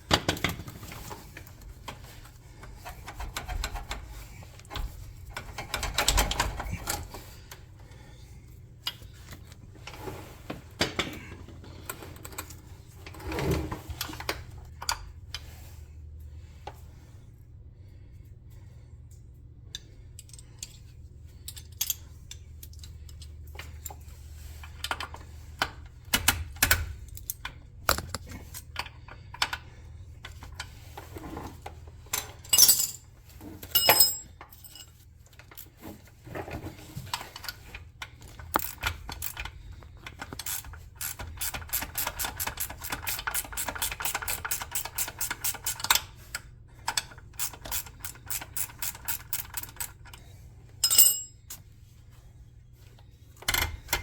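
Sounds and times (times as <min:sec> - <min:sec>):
metal tools clinking and knocking: 0:27.2 - 0:28.6, 0:32.2 - 0:35.8, 0:38.3 - 0:39.5, 0:50.8 - 0:51.6
ratchet wrench clicking: 0:38.5 - 0:39.5, 0:40.2 - 0:46.0, 0:47.4 - 0:50.0.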